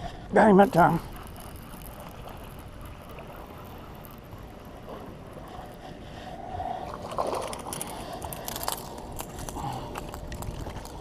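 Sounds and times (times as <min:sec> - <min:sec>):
water noise on boat: 0:00.0 - 0:11.0
wind noise: 0:06.6 - 0:11.0.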